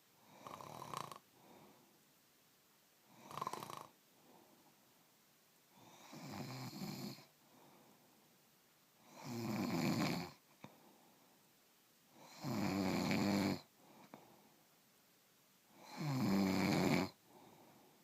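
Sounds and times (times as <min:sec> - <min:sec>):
quiet breathing: 0:00.0 - 0:02.3, 0:03.0 - 0:14.9, 0:15.6 - 0:18.0
snoring: 0:00.2 - 0:01.2, 0:03.1 - 0:04.0, 0:05.8 - 0:07.3, 0:09.0 - 0:10.4, 0:12.2 - 0:13.7, 0:15.8 - 0:17.2.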